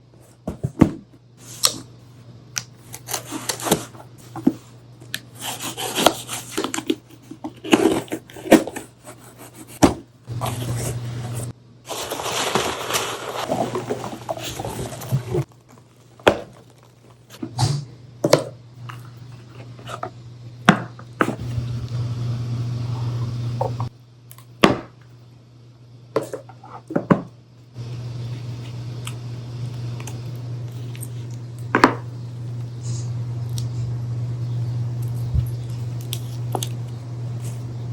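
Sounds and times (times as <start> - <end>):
packaging clicks and scrapes: 2.9 - 4.0, 5.4 - 17.4
low hum: 10.1 - 24.3, 27.4 - 37.9.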